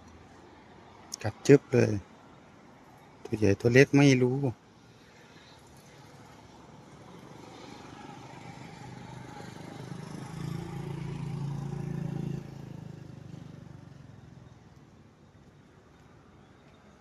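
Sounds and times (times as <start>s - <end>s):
small engine passing by: 5.4s - 14.7s.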